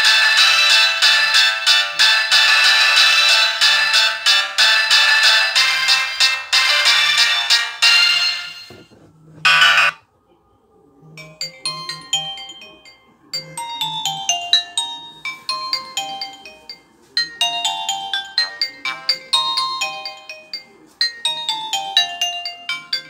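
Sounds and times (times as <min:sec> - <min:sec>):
mobile phone ringtone melody: 0:00.0 - 0:08.8, 0:09.5 - 0:10.0, 0:11.2 - 0:23.0.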